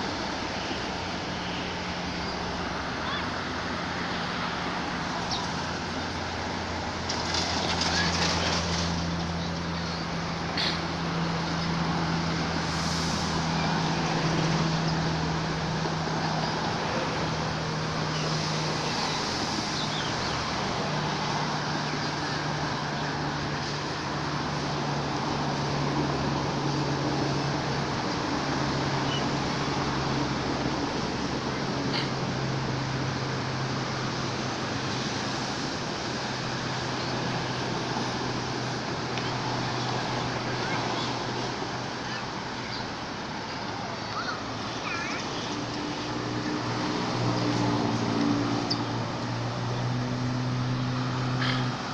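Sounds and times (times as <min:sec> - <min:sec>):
rushing noise: 0:00.0 - 0:51.9
even hiss: 0:12.6 - 0:13.6.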